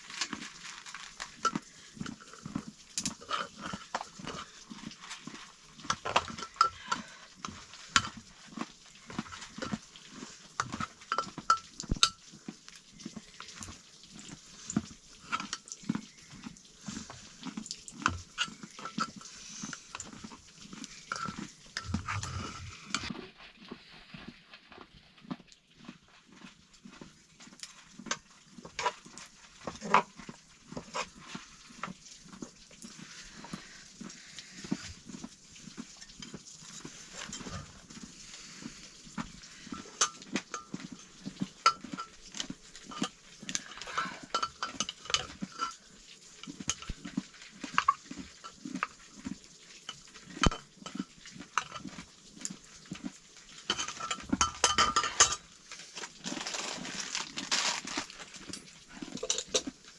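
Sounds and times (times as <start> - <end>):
chewing: 0.0 - 59.9
spoon scraping a metal plate: 18.1 - 23.2.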